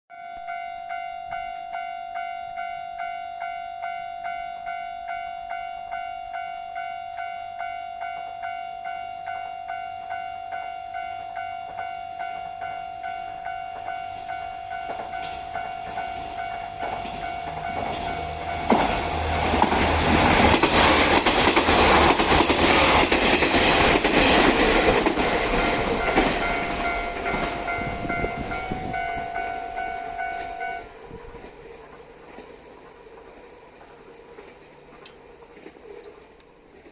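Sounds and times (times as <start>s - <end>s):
level-crossing bell ringing: 0.1s - 19.2s, 22.2s - 31.0s
train wheel and rail clatter: 12.6s - 36.9s.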